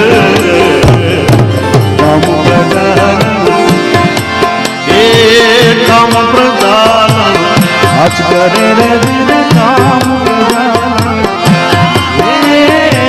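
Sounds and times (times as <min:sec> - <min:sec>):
hand drum beats: 0:00.0 - 0:13.0.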